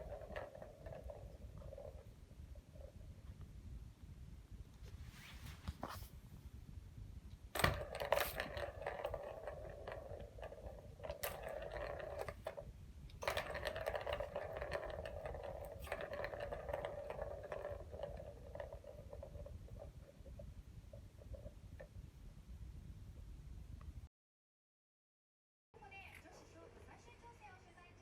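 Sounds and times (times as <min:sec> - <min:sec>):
ball rattling in cat toy: 0:00.0 - 0:03.2, 0:07.5 - 0:22.0.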